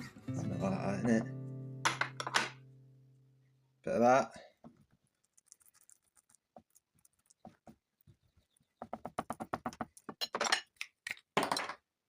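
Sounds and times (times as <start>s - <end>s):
shaker container rattling: 5.0s - 7.7s.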